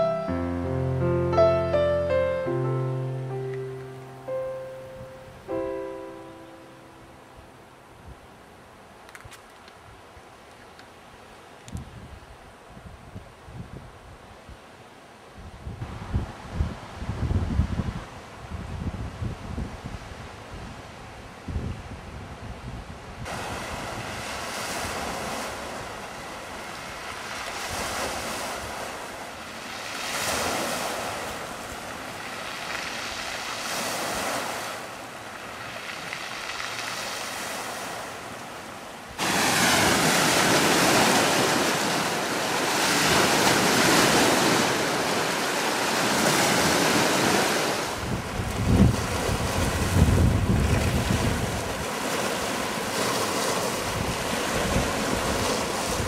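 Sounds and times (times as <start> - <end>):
sea waves: 0.0 - 11.6, 23.2 - 56.0
wind buffeting microphone: 11.7 - 14.2, 15.4 - 29.1, 39.2 - 56.0.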